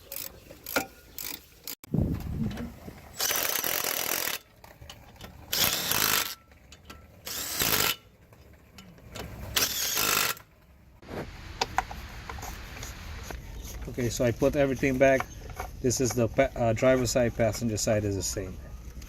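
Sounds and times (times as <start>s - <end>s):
power tool driving bolts: 3.2s - 4.5s, 5.5s - 6.4s, 7.2s - 8.1s, 9.2s - 10.5s.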